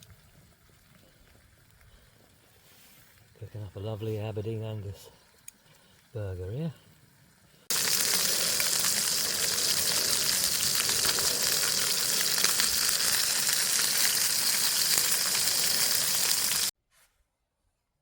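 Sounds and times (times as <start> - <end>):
burger sizzling: 7.7 - 16.7.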